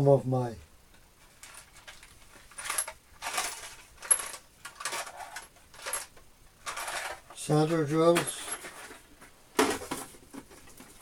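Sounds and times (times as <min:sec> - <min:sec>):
small metal drills clinking: 0:01.4 - 0:08.9.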